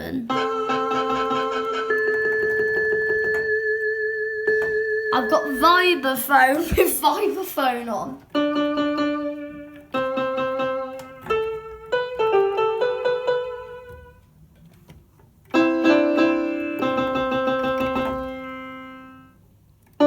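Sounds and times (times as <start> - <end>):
electronic keyboard vibraphone notes: 0.3 - 6.1.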